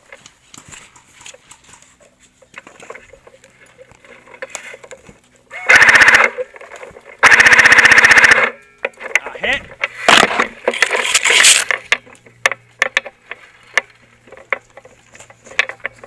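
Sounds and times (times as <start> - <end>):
airsoft machine gun bursts: 5.6 - 6.5, 7.2 - 8.6.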